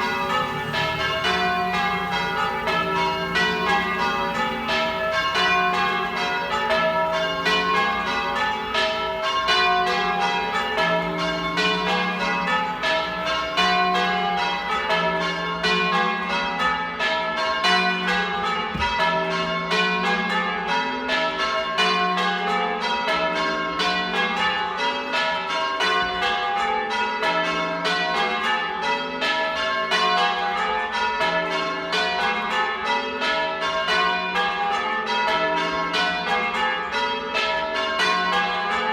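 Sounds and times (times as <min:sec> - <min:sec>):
church bells ringing: 0:00.0 - 0:38.9.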